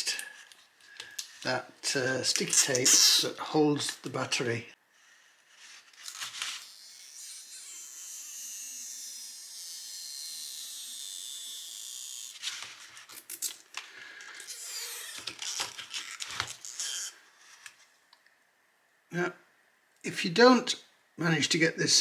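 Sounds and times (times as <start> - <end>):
adhesive strip pulled with hissing whine: 14.4 - 17.8.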